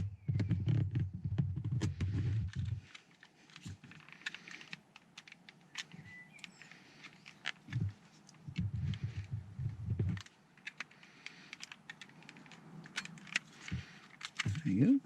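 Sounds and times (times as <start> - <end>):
plastic clicks and taps: 0.0 - 14.7.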